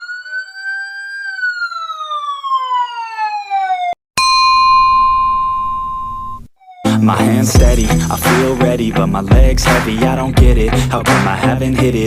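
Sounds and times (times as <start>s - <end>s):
siren-like wail: 0.0s - 4.0s, 5.5s - 7.4s
bell-like ding: 4.2s - 6.5s.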